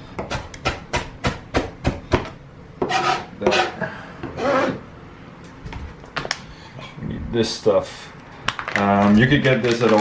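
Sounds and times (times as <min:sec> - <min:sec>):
knife chopping on cutting board: 0:00.2 - 0:03.7
blade scraping across board: 0:02.8 - 0:03.8, 0:04.4 - 0:04.8.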